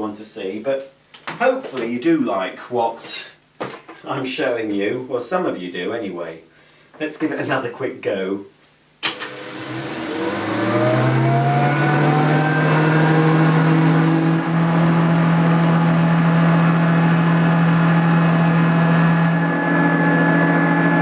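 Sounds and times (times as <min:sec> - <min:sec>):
vacuum cleaner motor whine: 0:09.0 - 0:21.0.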